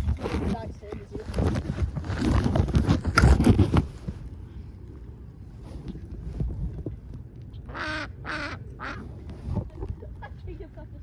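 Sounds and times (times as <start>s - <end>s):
low steady rumble: 0.0s - 11.0s
waterfowl honking calls: 7.7s - 9.1s.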